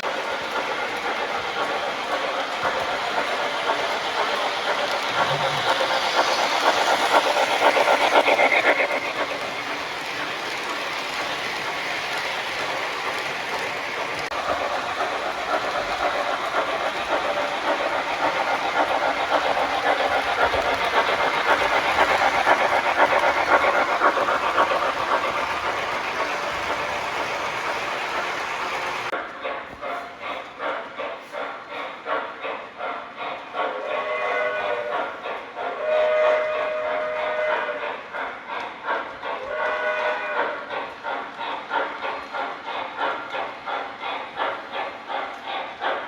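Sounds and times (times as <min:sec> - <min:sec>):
model train motor whirring: 0:00.0 - 0:29.1
wheels clicking over rail joints: 0:00.0 - 0:33.7, 0:34.4 - 0:46.0.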